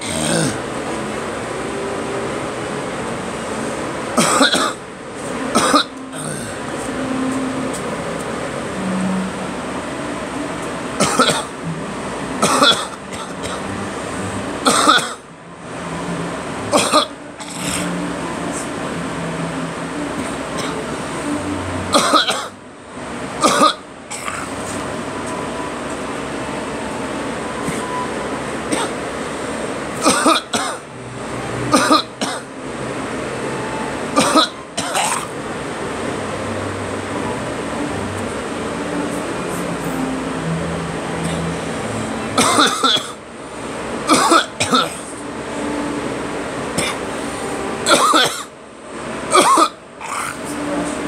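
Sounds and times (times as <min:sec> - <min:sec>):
person coughing harshly: 0:00.0 - 0:00.6, 0:04.2 - 0:04.8, 0:05.5 - 0:06.6, 0:11.0 - 0:11.5, 0:12.4 - 0:13.6, 0:14.7 - 0:15.2, 0:16.7 - 0:17.9, 0:21.9 - 0:22.5, 0:23.4 - 0:24.5, 0:30.0 - 0:30.8, 0:31.7 - 0:32.4, 0:34.2 - 0:35.3, 0:42.4 - 0:43.2, 0:44.1 - 0:45.0, 0:47.9 - 0:48.5, 0:49.3 - 0:50.4
steady background noise: 0:00.0 - 0:51.0.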